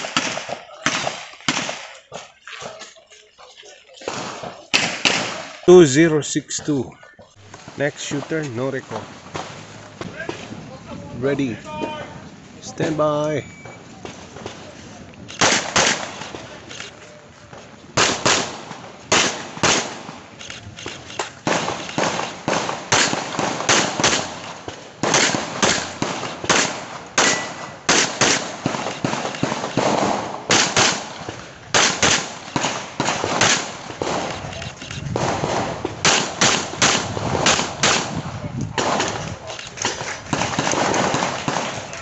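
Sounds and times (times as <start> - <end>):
handgun shots: 4.1 - 5.8, 15.3 - 16.8, 18.0 - 38.2, 38.8 - 42.0.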